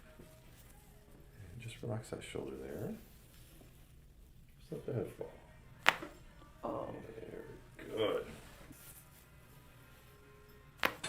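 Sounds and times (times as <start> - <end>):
neck joint cracking: 5.8 - 6.2, 10.8 - 11.0.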